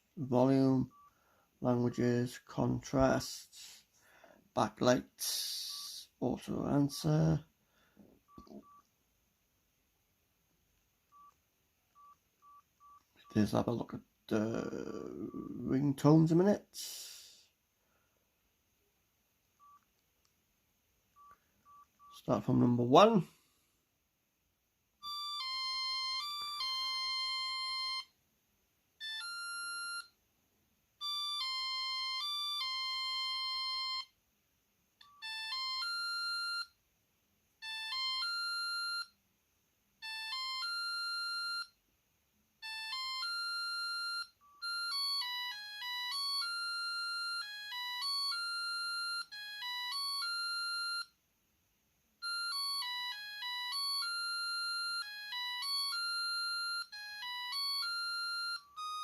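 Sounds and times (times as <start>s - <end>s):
phone beeping ringtone melodies: 0.8s - 1.2s, 8.3s - 8.8s, 11.1s - 13.4s, 14.4s - 15.7s, 19.6s - 19.8s, 21.2s - 22.2s, 25.0s - 28.2s, 29.0s - 30.2s, 31.0s - 34.2s, 35.0s - 36.8s, 37.6s - 39.2s, 40.0s - 41.8s, 42.6s - 51.2s, 52.2s - 59.0s.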